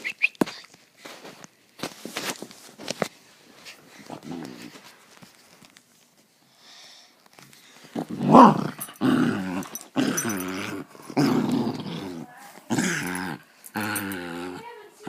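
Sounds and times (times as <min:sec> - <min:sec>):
puppy growling: 0:08.0 - 0:15.0.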